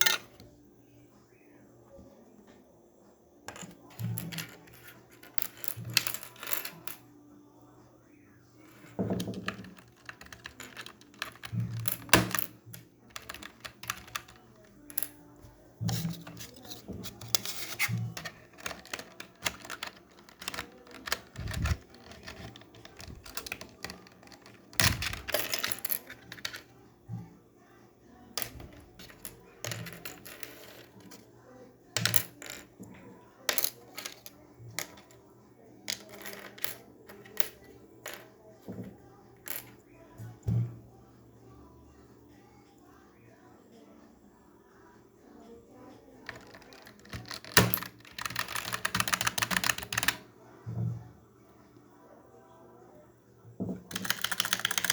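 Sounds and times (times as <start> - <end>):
keyboard keys clicking: 13.2 - 14.4, 18.5 - 25.4, 46.3 - 50.2, 53.9 - 54.9.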